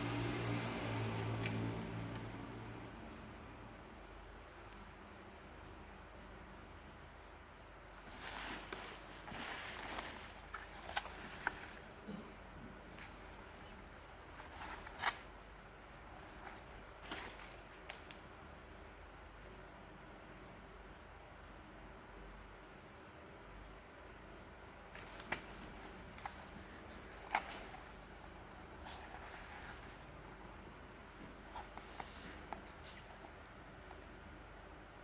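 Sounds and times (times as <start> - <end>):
packaging rustling and crinkling: 7.9 - 12.2, 12.9 - 15.3, 15.9 - 18.2, 25.0 - 33.5.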